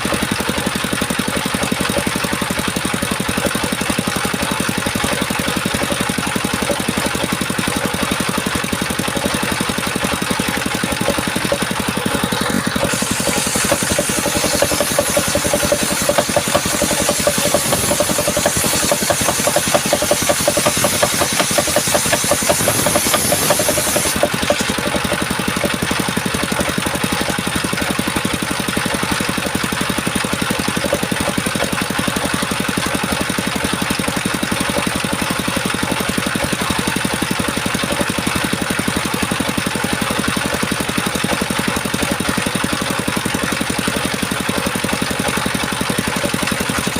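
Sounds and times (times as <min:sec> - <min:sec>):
circular sawmill running: 0:00.0 - 0:46.9
saw blade cutting wood hiss: 0:12.7 - 0:24.9.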